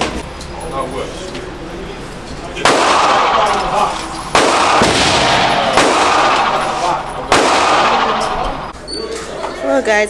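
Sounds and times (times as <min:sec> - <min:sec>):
gunshots with echoing ring: 0:02.6 - 0:08.7.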